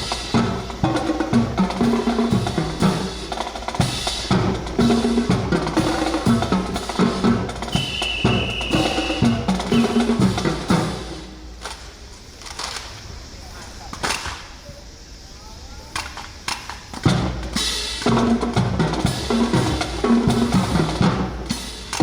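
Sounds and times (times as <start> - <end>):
drum-heavy music: 0.0 - 11.5, 17.0 - 22.0
high held tone: 7.7 - 10.4.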